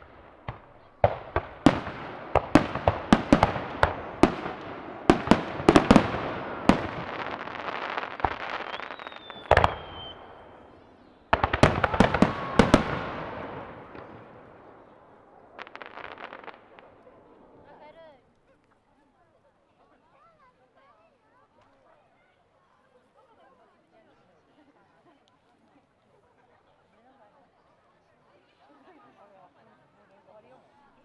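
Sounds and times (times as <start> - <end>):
fireworks bangs and crackle: 0.0 - 17.8
descending whistle: 8.7 - 10.3
heavy firework boom: 11.4 - 14.7.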